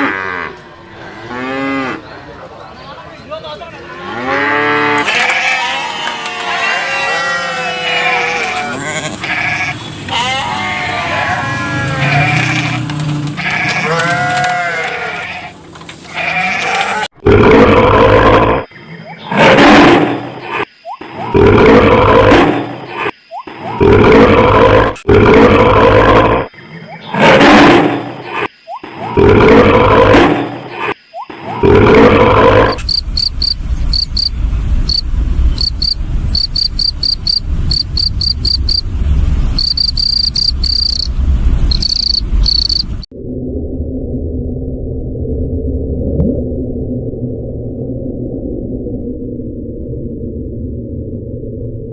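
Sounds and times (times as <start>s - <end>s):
sheep bleating: 4.0s - 17.2s
rough roar-like animal call: 10.1s - 15.5s, 16.1s - 20.2s, 21.3s - 23.1s, 23.8s - 26.5s, 29.1s - 30.9s, 31.6s - 32.8s
cricket chirping: 20.4s - 21.4s, 22.7s - 23.8s, 28.0s - 29.0s, 30.6s - 31.6s, 32.6s - 43.1s
low rumble: 33.1s - 51.9s.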